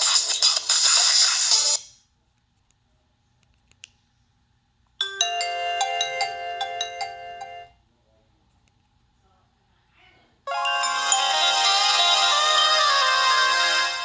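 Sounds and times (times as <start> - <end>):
chime-like ringtone melody: 5.0 - 7.8, 10.5 - 14.0.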